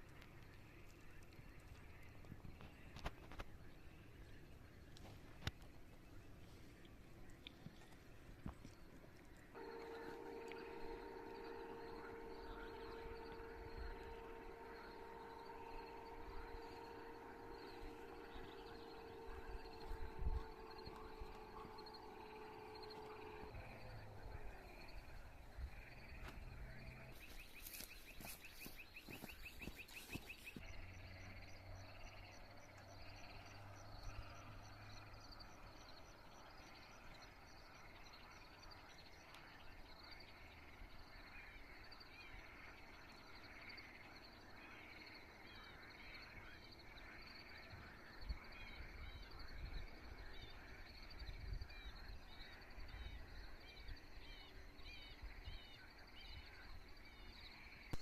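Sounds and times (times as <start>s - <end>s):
small birds chirping: 17.6s - 41.0s.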